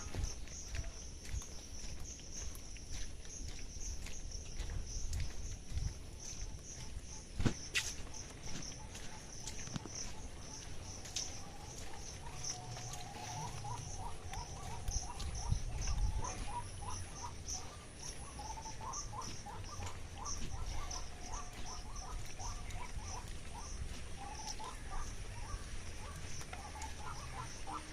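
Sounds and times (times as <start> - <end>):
lower chirping calls: 0.0 - 27.9.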